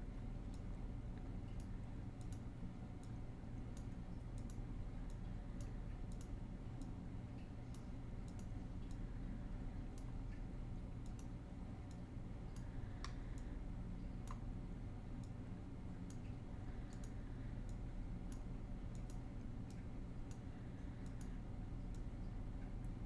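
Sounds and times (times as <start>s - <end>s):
steady low hum: 0.0s - 23.0s
computer mouse clicking: 0.5s - 7.0s, 7.7s - 9.1s, 11.0s - 13.5s, 14.2s - 14.5s, 16.0s - 16.3s, 16.9s - 22.1s.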